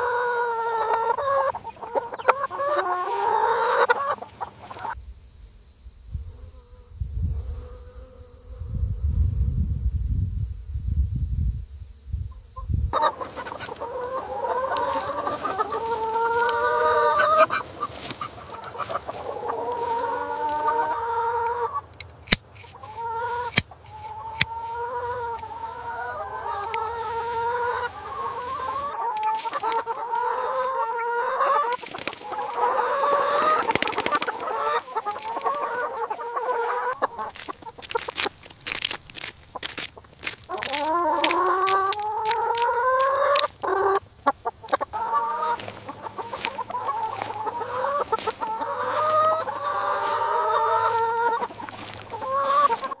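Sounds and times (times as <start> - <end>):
chickens clucking: 0.0 - 5.0, 12.3 - 53.0
sharp clicks: 21.8 - 22.8.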